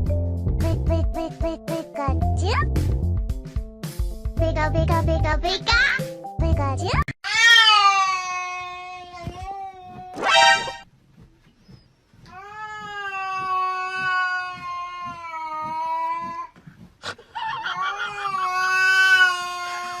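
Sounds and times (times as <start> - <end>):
cat yowling: 17.5 - 20.0.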